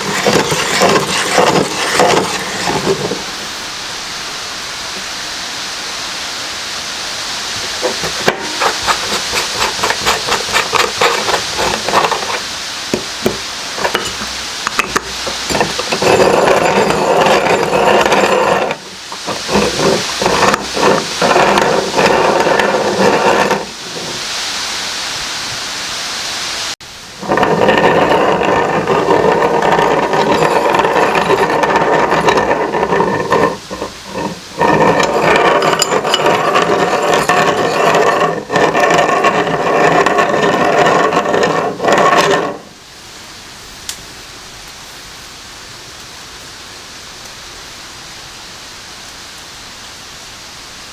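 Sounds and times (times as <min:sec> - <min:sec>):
meat grinder grinding: 0:07.6 - 0:12.4.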